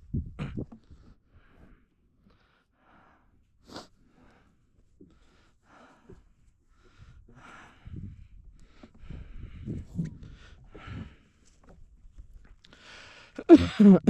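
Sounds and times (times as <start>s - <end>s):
man breathing heavily: 4.2s - 11.4s.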